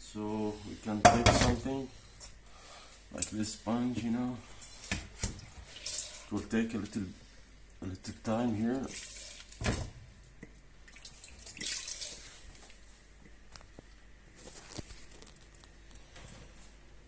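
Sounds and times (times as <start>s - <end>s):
sponge mopping up water: 3.2s - 9.7s, 10.8s - 12.8s
water splashing and dripping: 10.8s - 12.3s.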